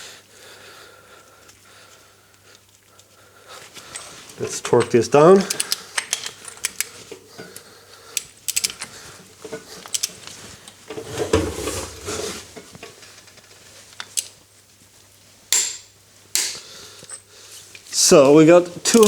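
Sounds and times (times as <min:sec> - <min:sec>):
torque wrench clicking: 0:05.4 - 0:06.9, 0:08.2 - 0:08.9.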